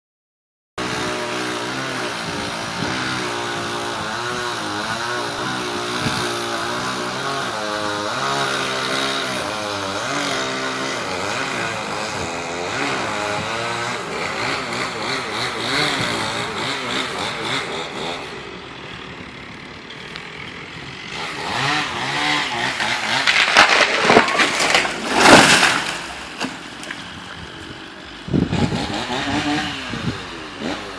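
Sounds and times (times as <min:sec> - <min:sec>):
chainsaw cutting: 0:00.8 - 0:30.9
tree cracking and crashing: 0:21.1 - 0:29.5.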